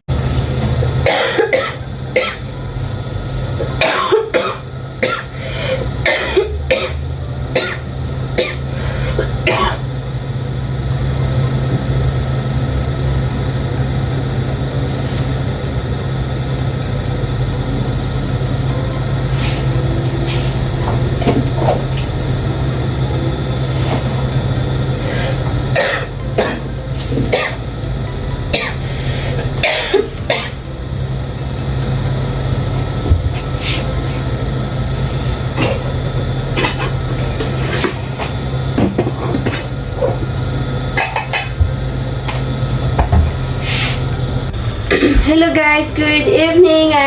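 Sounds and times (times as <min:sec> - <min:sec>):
steady low hum: 0:00.1 - 0:47.0
person coughing: 0:01.0 - 0:02.5, 0:03.8 - 0:05.4, 0:06.0 - 0:07.0, 0:07.6 - 0:09.8, 0:25.8 - 0:26.7, 0:28.5 - 0:28.8, 0:29.6 - 0:30.6, 0:44.9 - 0:45.3.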